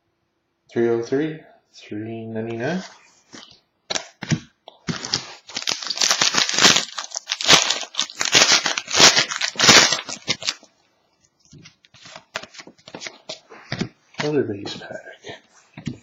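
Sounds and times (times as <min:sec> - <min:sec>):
foil wrapper tearing and crinkling: 0:04.9 - 0:10.7, 0:12.0 - 0:14.3.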